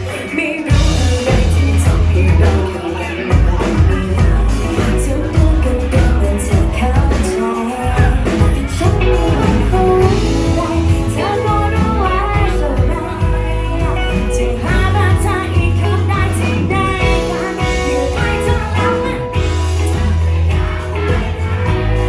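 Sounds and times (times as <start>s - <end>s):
woman singing: 0.0s - 20.3s
rock band playing: 0.0s - 22.0s.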